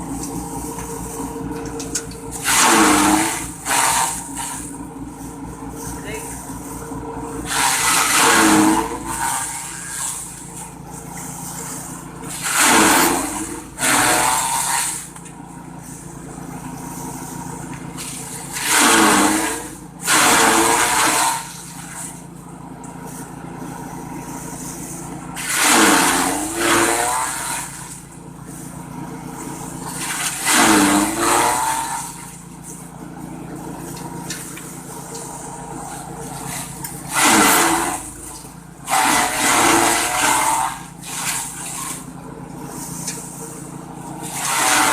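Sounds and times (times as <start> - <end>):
grass chopper motor running: 0.0 - 44.9
blades chopping grass: 1.5 - 4.7, 7.4 - 10.3, 12.3 - 15.2, 17.9 - 22.2, 25.3 - 28.0, 29.8 - 32.8, 33.8 - 42.1, 44.2 - 44.9.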